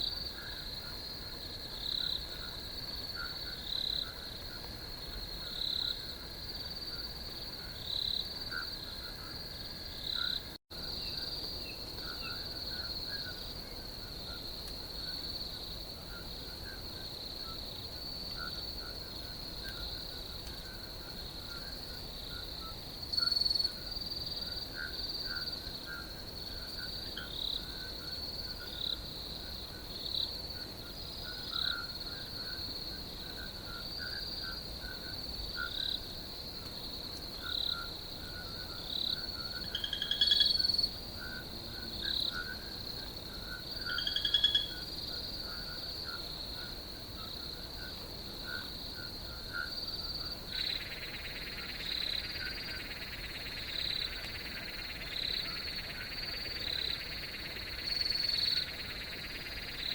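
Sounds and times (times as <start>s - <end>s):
crickets trilling: 0.0s - 59.9s
lower insect chirps: 37.4s - 41.4s, 43.5s - 44.9s, 50.5s - 59.9s.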